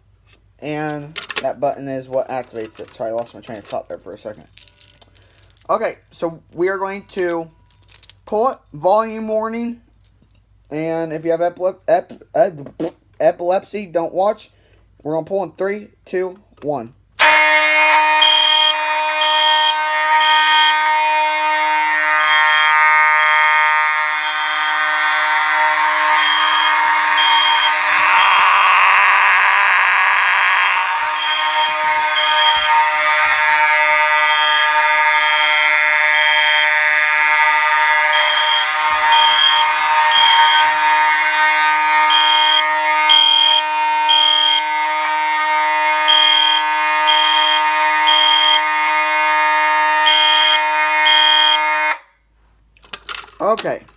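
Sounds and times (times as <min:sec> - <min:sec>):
higher tone pulsing: 0:17.2 - 0:51.8
fire alarm horn tone: 0:17.2 - 0:52.2.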